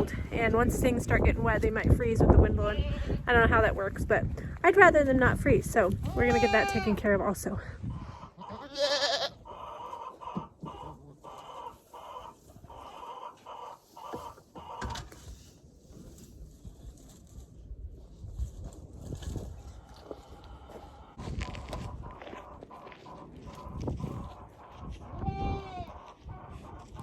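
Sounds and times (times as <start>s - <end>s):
wind rumbling across microphone: 0.0s - 8.6s, 14.9s - 27.0s
goat bleating: 6.0s - 7.0s, 8.4s - 9.5s, 25.2s - 26.0s
footsteps: 18.3s - 25.2s.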